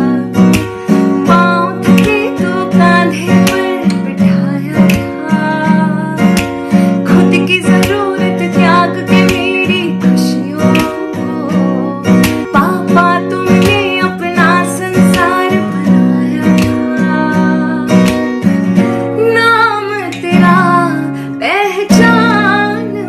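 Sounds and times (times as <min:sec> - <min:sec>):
person singing: 0:00.0 - 0:18.1, 0:19.2 - 0:23.0
plucked and strummed guitar: 0:00.0 - 0:23.0.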